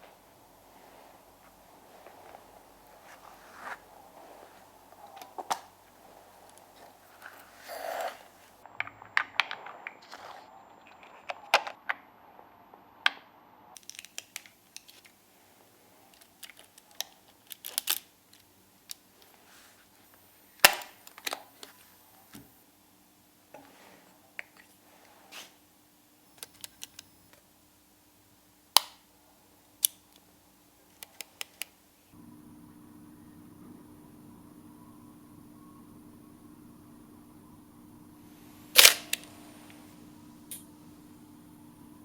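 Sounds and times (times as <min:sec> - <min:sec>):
camera shutter clicks: 0:38.7 - 0:39.3.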